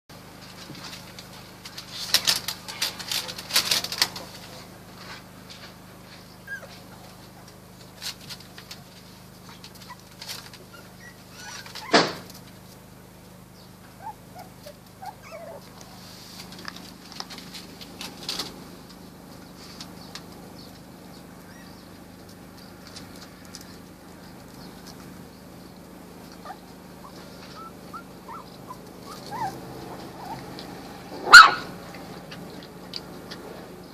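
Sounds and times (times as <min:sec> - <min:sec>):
puppies barking and whimpering: 0:06.3 - 0:07.5, 0:09.3 - 0:12.5, 0:13.7 - 0:17.0, 0:20.8 - 0:22.6, 0:23.8 - 0:33.8.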